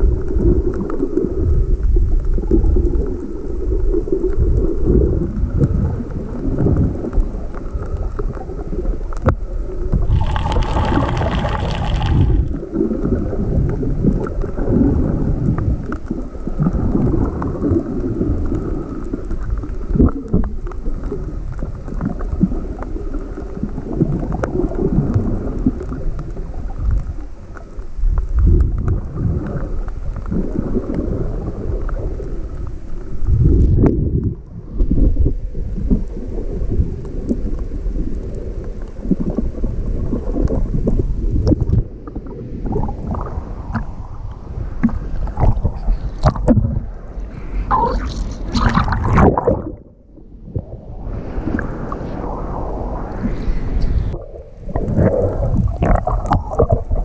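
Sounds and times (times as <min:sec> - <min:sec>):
waves breaking: 0:02.8 - 0:33.8, 0:35.6 - 0:57.0
wind buffeting microphone: 0:09.9 - 0:15.9, 0:33.3 - 0:37.0.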